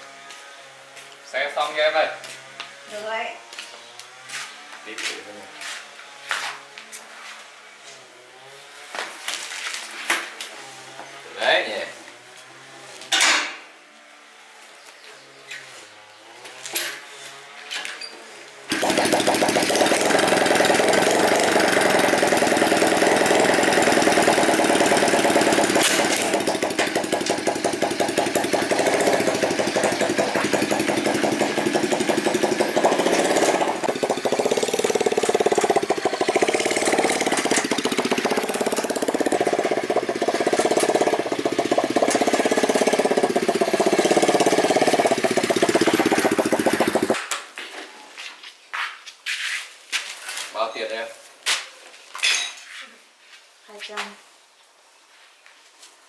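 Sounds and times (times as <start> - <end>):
motorcycle engine revving: 18.6 - 47.2.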